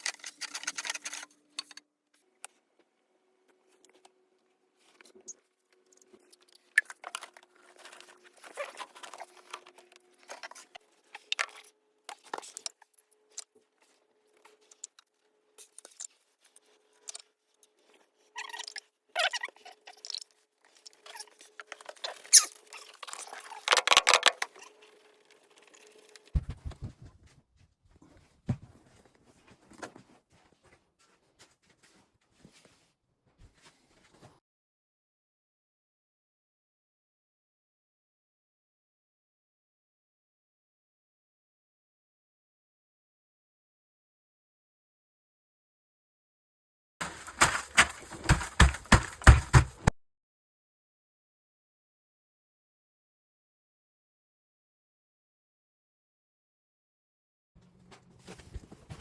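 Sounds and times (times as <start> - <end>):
tools clicking and scraping: 0.0 - 1.8, 47.0 - 49.9.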